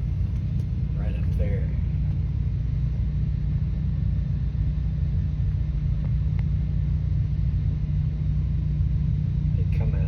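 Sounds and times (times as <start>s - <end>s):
steady low rumble: 0.0s - 10.0s.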